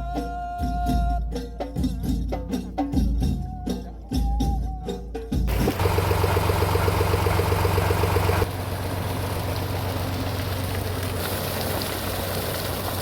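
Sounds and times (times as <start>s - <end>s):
engine running: 5.5s - 13.0s.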